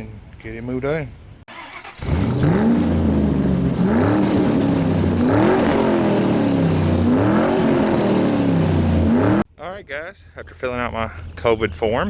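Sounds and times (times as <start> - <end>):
car engine revving: 1.5 - 9.4.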